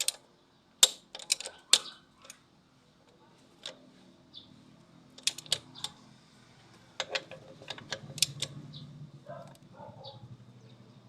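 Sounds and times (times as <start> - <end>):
metallic tool clicks and taps: 0.8 - 2.4.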